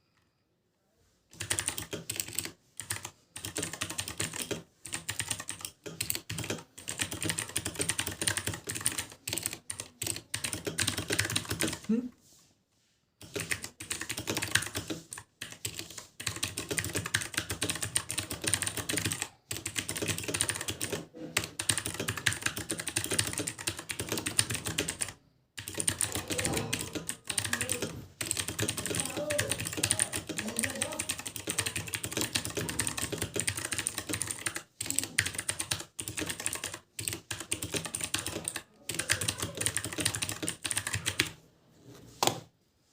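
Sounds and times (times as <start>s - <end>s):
clicky keyboard typing: 1.4s - 11.9s, 13.2s - 41.4s.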